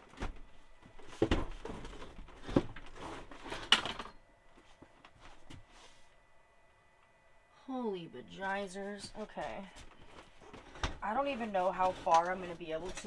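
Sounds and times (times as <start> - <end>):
fridge knocking and scraping: 0.0 - 3.8, 10.3 - 13.0.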